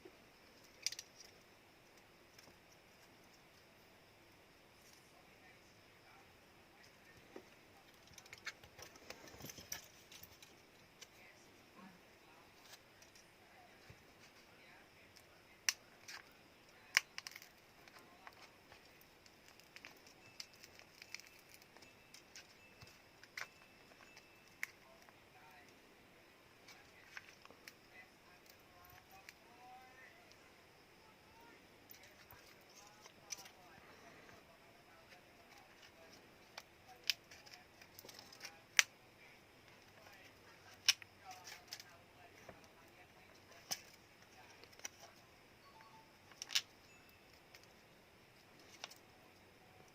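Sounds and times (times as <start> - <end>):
small tools clicking and tapping: 16.9 - 25.1, 46.3 - 47.7.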